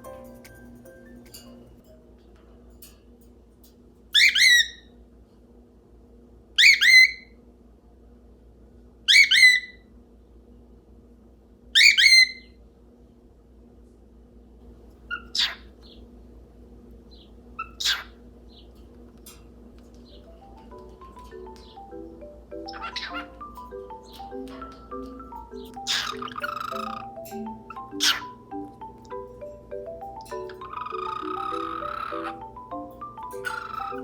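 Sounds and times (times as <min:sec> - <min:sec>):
cockatiel calling: 0:04.2 - 0:04.9, 0:06.6 - 0:07.4, 0:09.1 - 0:09.8, 0:11.8 - 0:12.6, 0:15.1 - 0:16.0, 0:17.6 - 0:18.2, 0:20.1 - 0:28.7, 0:30.4 - 0:34.0.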